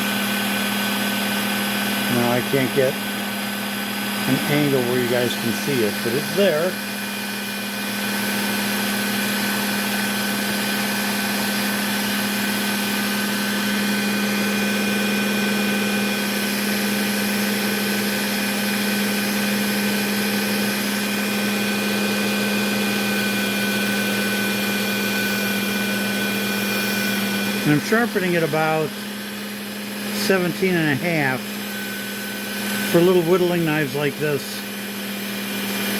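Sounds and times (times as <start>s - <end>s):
belt sharpener motor humming: 0.0s - 35.9s.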